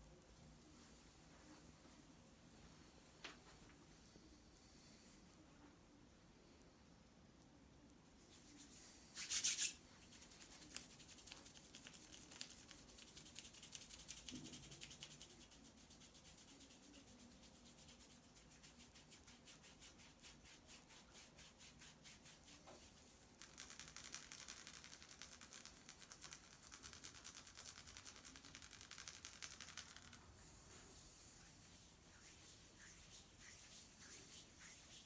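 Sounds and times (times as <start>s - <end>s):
hands rubbing skin: 8.3s - 35.0s.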